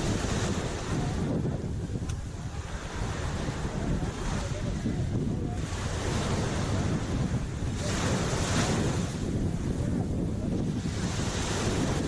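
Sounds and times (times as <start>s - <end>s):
sea waves washing in: 0.0s - 12.0s
wind buffeting microphone: 0.0s - 12.0s.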